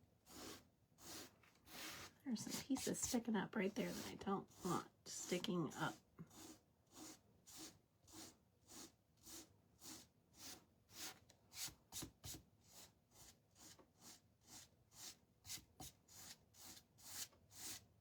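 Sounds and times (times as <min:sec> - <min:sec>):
sandpaper scratching on wood: 0:00.3 - 0:03.1, 0:06.3 - 0:10.0.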